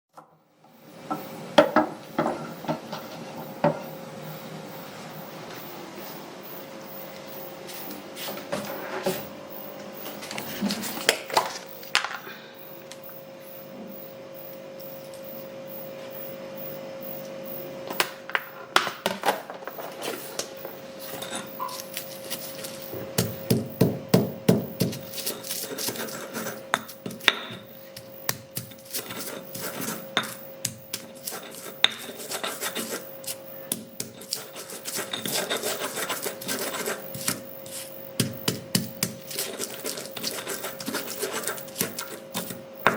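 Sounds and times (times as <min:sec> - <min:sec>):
faint steady hum: 0:00.2 - 0:42.9
pestle grinding in mortar: 0:21.0 - 0:42.9
pestle knocking in mortar: 0:23.1 - 0:25.2, 0:26.7 - 0:29.0, 0:33.7 - 0:35.4, 0:38.2 - 0:42.9.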